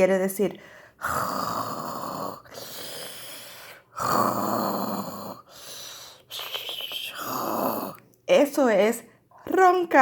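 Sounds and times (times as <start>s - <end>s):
woman imitating snoring: 1.0s - 5.5s, 7.0s - 8.0s.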